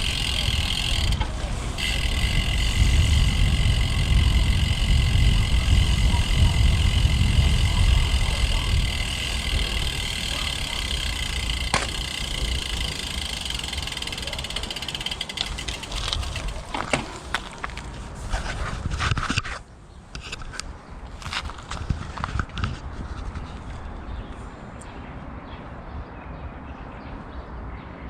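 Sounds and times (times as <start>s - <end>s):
wind rumbling on microphone: 0.0s - 14.4s, 15.3s - 26.7s
steady high buzz: 0.0s - 16.6s.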